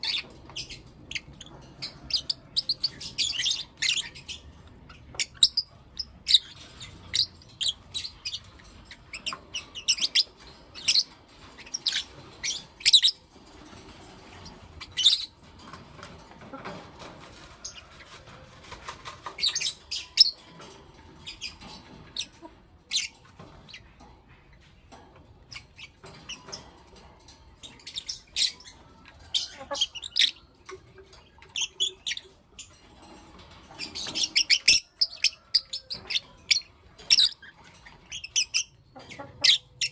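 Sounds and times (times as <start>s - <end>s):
lovebirds chirping: 27.6s - 32.8s.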